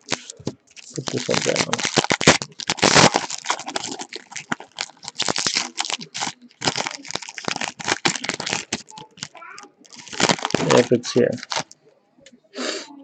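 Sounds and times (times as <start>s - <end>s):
wrapper crinkling and tearing: 0.0s - 11.8s.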